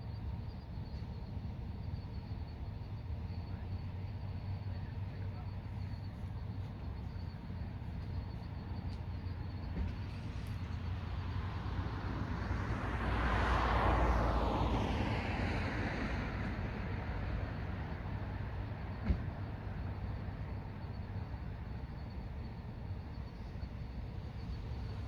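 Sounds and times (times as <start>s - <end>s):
car driving past: 9.7s - 18.4s.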